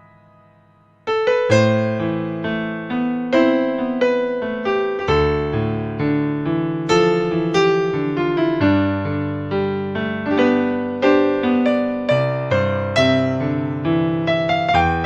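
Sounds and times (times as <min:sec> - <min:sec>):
electronic keyboard piano chords: 0:00.0 - 0:15.0.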